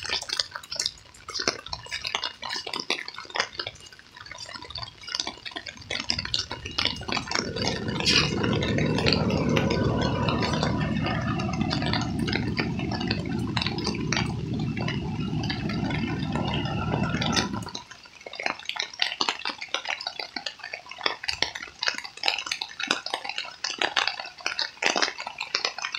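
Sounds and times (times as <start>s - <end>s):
water dripping and splashing: 0.0s - 25.9s
steady low rumble: 5.8s - 17.9s.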